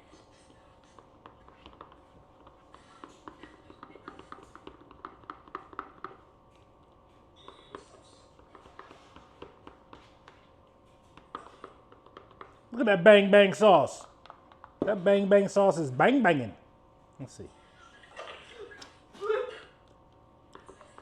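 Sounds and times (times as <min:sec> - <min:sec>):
utensil stirring sauce in a bowl: 0:00.0 - 0:12.8.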